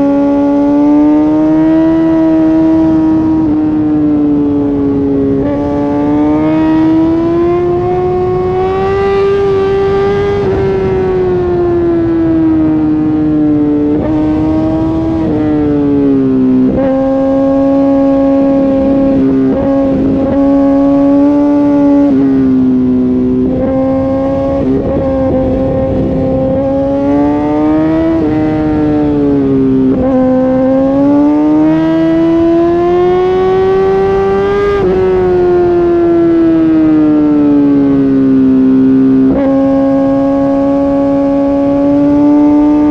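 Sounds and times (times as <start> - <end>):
motorcycle engine at high revs: 0.0 - 42.9
wind rushing: 17.0 - 29.9.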